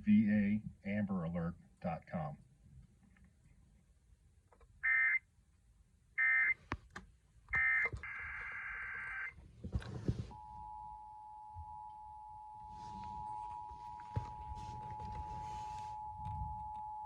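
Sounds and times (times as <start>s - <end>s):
two-tone attention signal: 10.3s - 17.0s.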